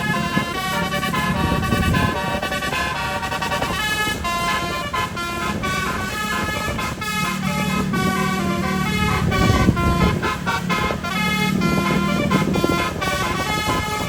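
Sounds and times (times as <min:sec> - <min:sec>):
bus horn melody: 0:00.0 - 0:14.0
low steady drone: 0:00.0 - 0:14.0.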